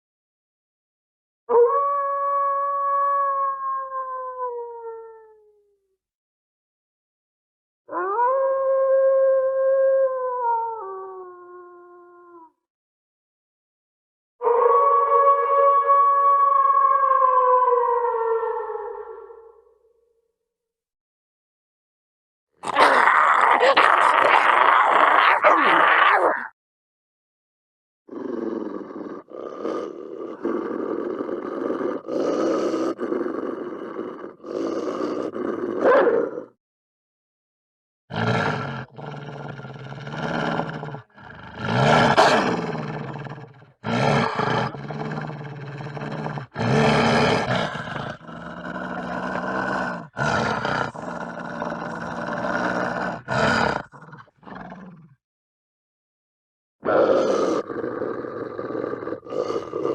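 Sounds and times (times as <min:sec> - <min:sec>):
wolves howling: 0:14.4 - 0:19.5, 0:44.1 - 0:53.9.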